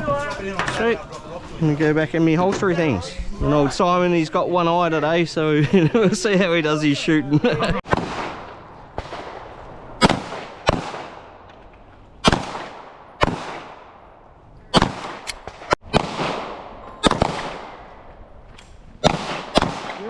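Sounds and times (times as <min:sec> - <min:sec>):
gunshots echoing: 0:07.8 - 0:18.4, 0:19.0 - 0:20.0.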